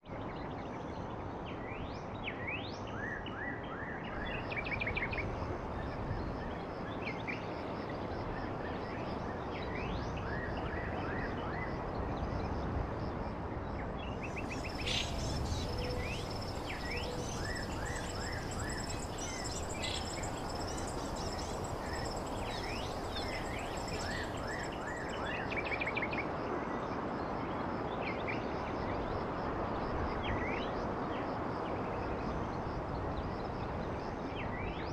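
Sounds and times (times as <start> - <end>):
background hiss: 14.2 - 25.4
birds chirping and trilling: 14.3 - 25.2
thin high steady tone: 14.4 - 25.2.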